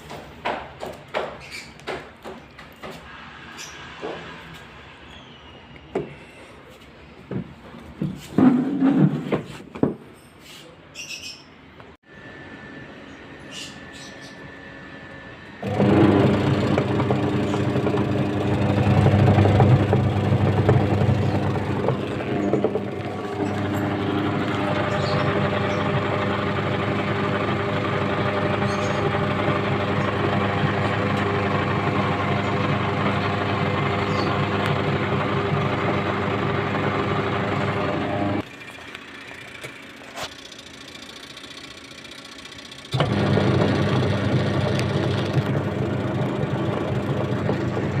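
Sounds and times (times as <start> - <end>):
washing machine motor humming: 15.5 - 48.0.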